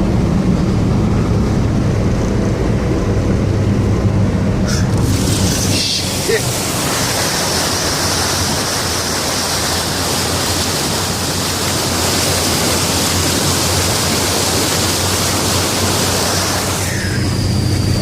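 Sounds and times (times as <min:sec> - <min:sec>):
engine drone: 0:00.0 - 0:18.0
water rushing and splashing: 0:04.6 - 0:18.0.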